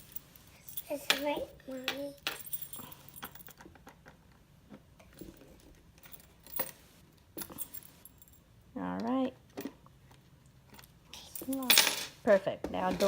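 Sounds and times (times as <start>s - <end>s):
toy keys clinking: 0.0s - 3.6s.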